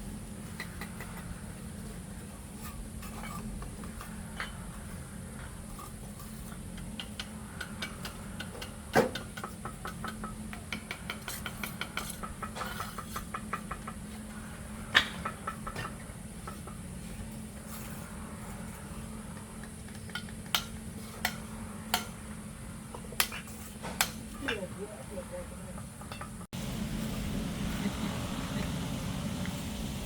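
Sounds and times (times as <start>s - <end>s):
steady low hum: 23.6s - 30.0s.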